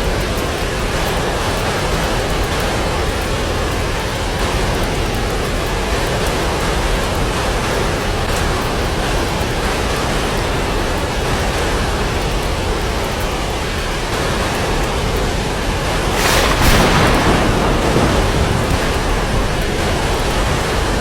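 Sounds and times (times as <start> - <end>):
steady rain falling: 0.0 - 21.0
low thunder rumble: 15.5 - 21.0.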